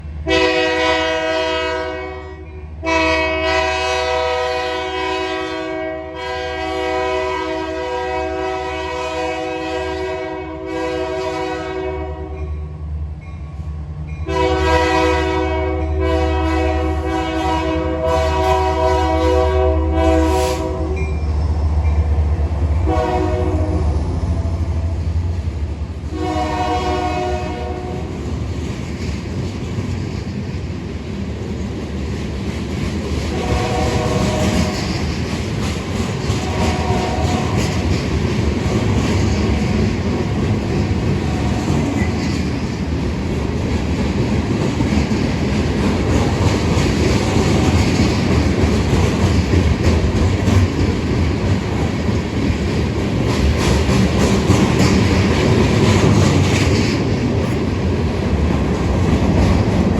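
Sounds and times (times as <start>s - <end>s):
locomotive air horn blasts: 0.2s - 12.4s, 14.3s - 21.0s, 22.8s - 24.5s, 26.1s - 28.1s, 33.3s - 34.9s, 36.4s - 37.7s.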